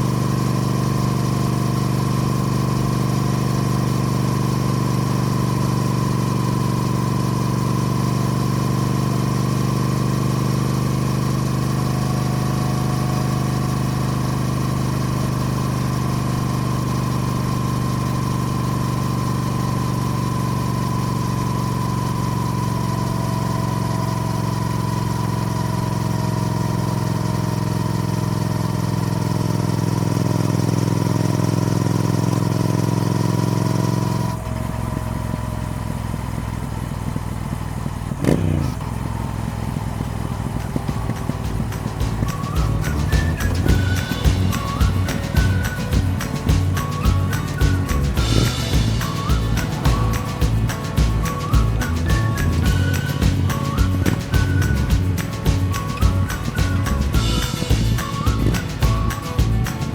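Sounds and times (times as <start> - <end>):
motorcycle engine idling: 0.0 - 59.9.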